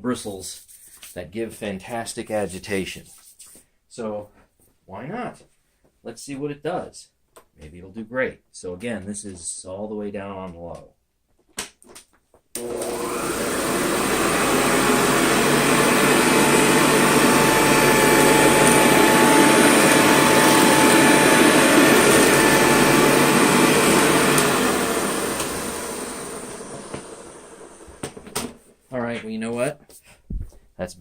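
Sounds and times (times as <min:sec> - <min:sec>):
upright vacuum cleaner running: 0:12.6 - 0:28.6.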